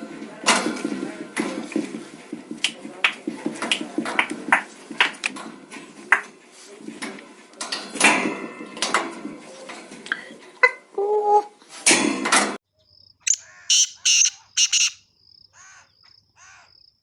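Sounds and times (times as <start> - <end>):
birds calling: 13.0 - 16.9.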